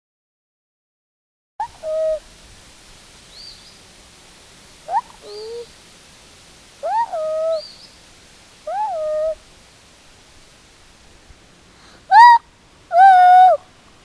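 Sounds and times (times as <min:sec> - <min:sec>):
child hooting bird-like calls: 0:01.6 - 0:02.2, 0:04.9 - 0:05.7, 0:06.8 - 0:07.7, 0:08.7 - 0:09.4, 0:12.0 - 0:13.7
faint high bird chirps: 0:03.3 - 0:03.8, 0:04.9 - 0:05.7, 0:06.8 - 0:08.0.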